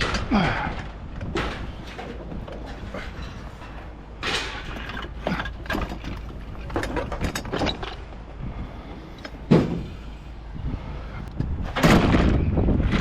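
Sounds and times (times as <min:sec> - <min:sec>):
knocks and clatter: 0:00.0 - 0:08.2, 0:09.4 - 0:10.0, 0:11.4 - 0:13.0
heavy thump: 0:09.4 - 0:10.0.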